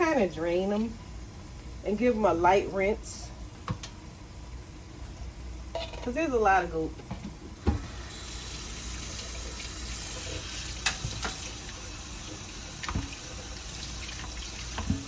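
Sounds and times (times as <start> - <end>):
tap running into sink: 10.2 - 11.6, 12.3 - 13.4, 14.1 - 15.0.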